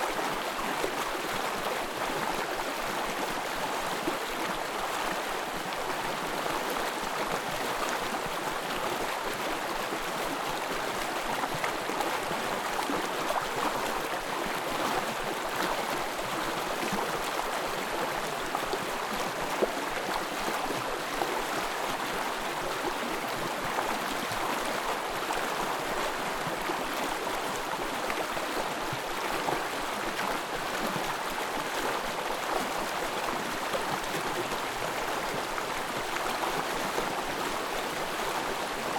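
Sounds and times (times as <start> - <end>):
stream flowing: 0.0 - 38.9.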